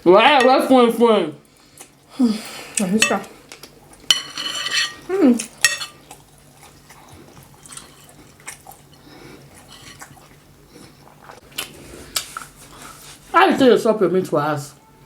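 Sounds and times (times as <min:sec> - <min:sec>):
cutlery clicking on plate: 0:03.0 - 0:03.3, 0:04.1 - 0:06.0
person chewing: 0:04.9 - 0:13.2.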